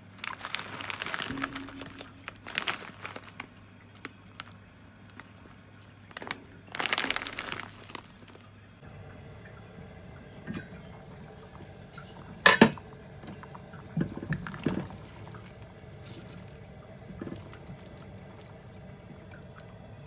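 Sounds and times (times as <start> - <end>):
water sloshing in a pot: 0.0 - 20.0
cookware clunk: 12.4 - 12.8.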